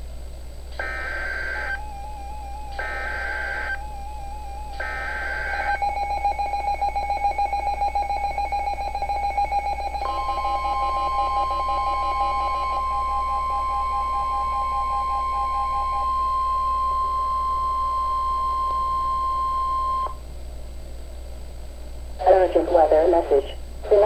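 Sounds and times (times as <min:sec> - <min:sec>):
screechy header data bursts: 0:00.8 - 0:16.5.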